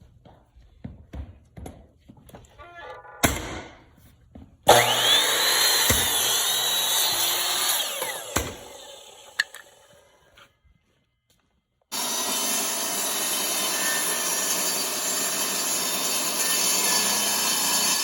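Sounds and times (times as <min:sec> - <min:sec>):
power saw cutting with whine: 0:04.7 - 0:10.1, 0:11.9 - 0:18.0.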